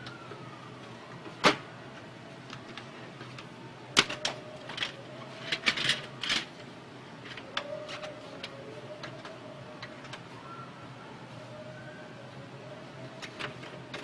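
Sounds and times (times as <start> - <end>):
faint motor whine: 0.0 - 14.0
printer clicks and clatters: 4.0 - 6.5, 13.2 - 14.0.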